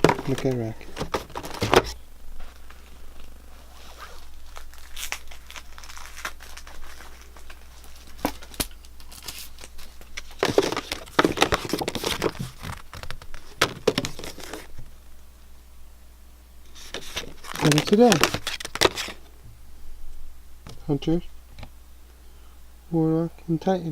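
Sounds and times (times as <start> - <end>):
packaging crinkling and tearing: 0.0 - 14.9, 16.7 - 19.3.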